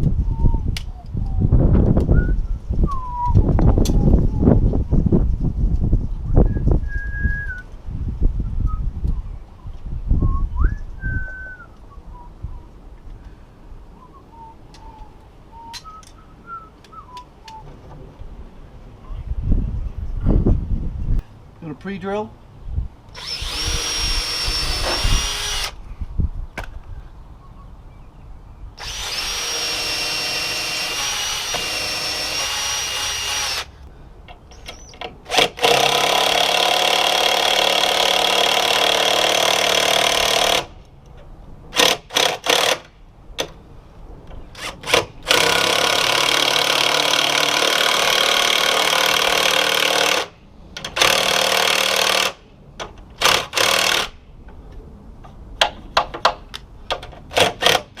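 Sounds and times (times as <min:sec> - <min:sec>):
power drill whining: 0:23.1 - 0:25.8, 0:28.8 - 0:33.8, 0:34.5 - 0:40.7, 0:44.6 - 0:50.3.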